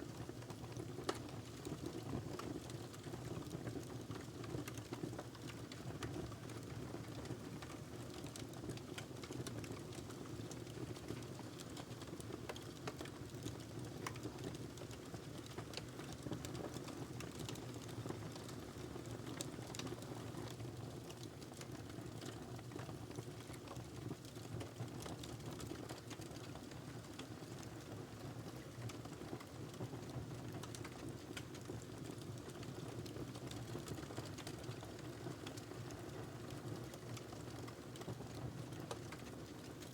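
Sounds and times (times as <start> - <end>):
logs crackling and popping: 0.7 - 1.3, 11.1 - 20.0, 23.4 - 27.3, 30.5 - 36.2, 36.8 - 39.9.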